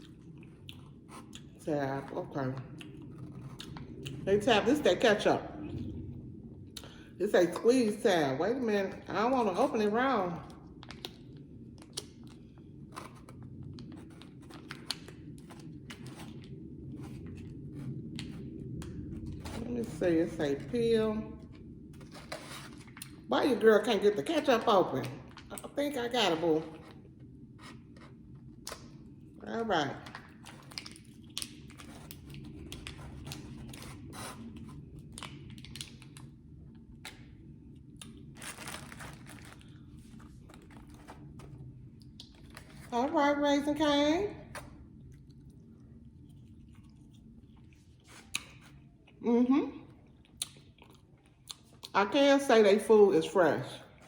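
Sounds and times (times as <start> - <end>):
food packaging crinkling and tearing: 10.6 - 20.0, 21.4 - 23.3, 30.0 - 42.9, 44.5 - 49.1
plastic packet crinkling: 38.0 - 42.9.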